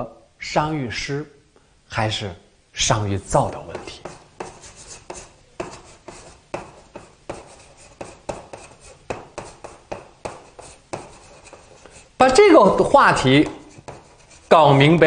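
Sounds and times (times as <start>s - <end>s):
pen scratching while writing: 3.6s - 12.1s, 13.4s - 14.5s.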